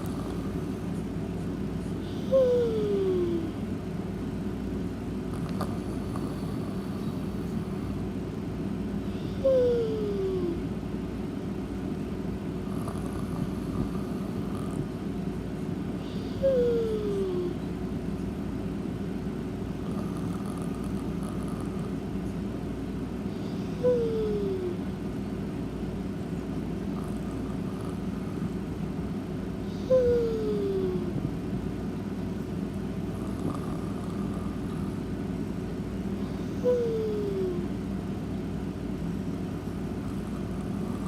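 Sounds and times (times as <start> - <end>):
steady low hum: 0.0 - 41.0
faint breaths: 5.3 - 8.1.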